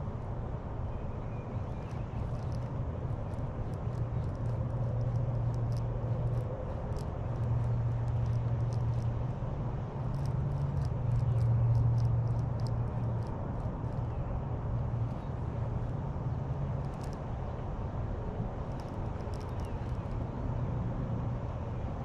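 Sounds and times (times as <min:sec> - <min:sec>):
faint ticks: 0:01.6 - 0:09.4, 0:10.0 - 0:14.3, 0:14.9 - 0:16.0, 0:16.8 - 0:17.3, 0:18.6 - 0:20.2
low motor hum: 0:01.6 - 0:17.2.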